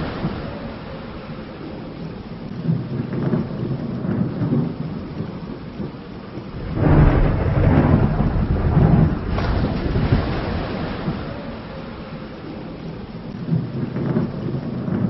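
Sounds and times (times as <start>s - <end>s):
rain falling: 0.0s - 15.0s
rolling thunder: 0.0s - 15.0s
thunder crash: 6.5s - 15.0s.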